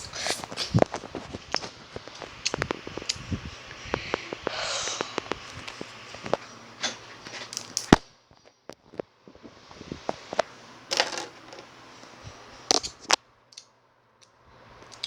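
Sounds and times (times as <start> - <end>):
breathy sniff: 0.0 - 0.8, 3.8 - 5.6
mouth clicks and smacks: 0.0 - 1.0.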